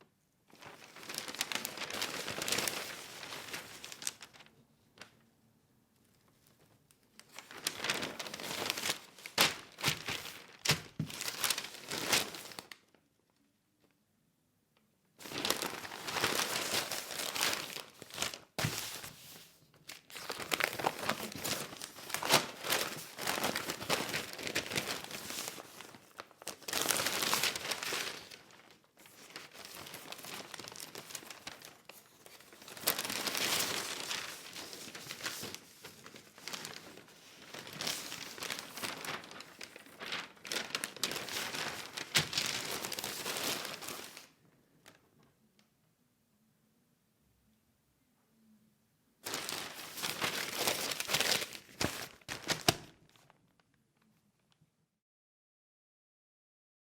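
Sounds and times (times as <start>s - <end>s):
newspaper pages rustling: 0.5s - 5.2s, 6.3s - 13.0s, 15.2s - 45.0s, 49.2s - 53.6s.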